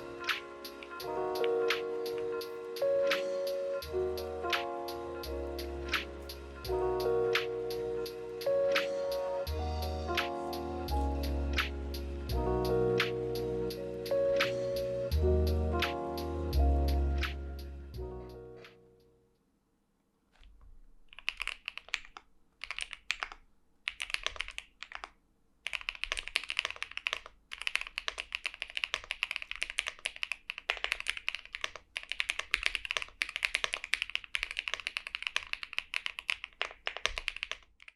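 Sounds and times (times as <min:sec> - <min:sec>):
typing on mechanical keyboard: 0:20.4 - 0:37.9.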